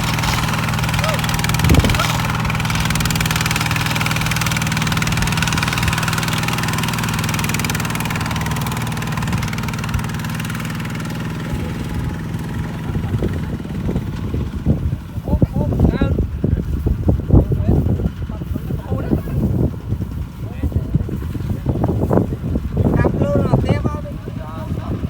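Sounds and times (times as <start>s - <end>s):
diesel tractor engine running: 0.0s - 25.0s.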